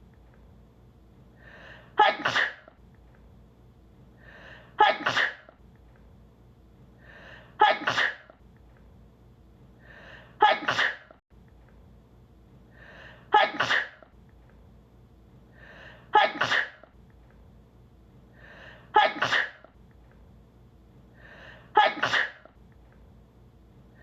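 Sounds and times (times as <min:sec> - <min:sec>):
woman sneezing: 0:02.0 - 0:02.7, 0:04.8 - 0:05.5, 0:07.6 - 0:08.3, 0:10.4 - 0:11.2, 0:13.3 - 0:14.1, 0:16.1 - 0:16.9, 0:18.9 - 0:19.7, 0:21.7 - 0:22.5.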